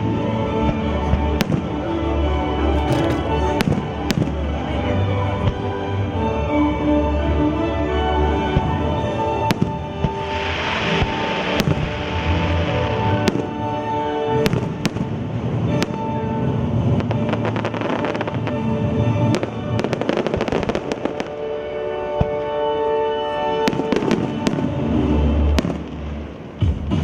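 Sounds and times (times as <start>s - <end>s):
fireworks bangs and crackles: 0.0s - 5.9s, 8.3s - 22.6s, 23.5s - 27.0s
music: 0.0s - 27.0s
deep firework booms: 2.8s - 4.5s.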